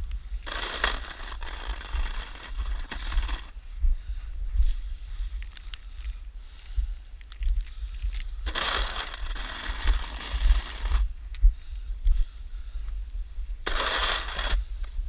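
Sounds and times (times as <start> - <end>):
steady low rumble: 0.0 - 15.0
snow shovel scraping through snow: 0.5 - 3.5, 8.5 - 11.0, 13.6 - 14.6.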